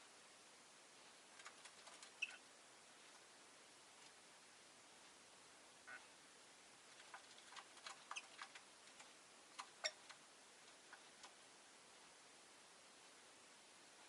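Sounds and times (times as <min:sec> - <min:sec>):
bird chirping faintly: 0:01.4 - 0:02.6, 0:05.8 - 0:06.2, 0:06.9 - 0:11.4.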